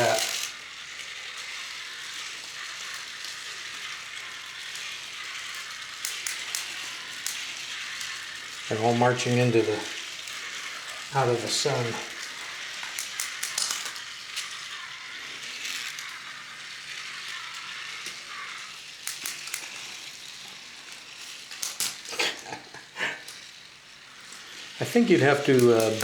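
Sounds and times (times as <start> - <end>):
steady hiss: 0.0 - 0.5, 6.2 - 13.2, 21.8 - 26.0
toy robots clicking and rattling: 0.0 - 26.0.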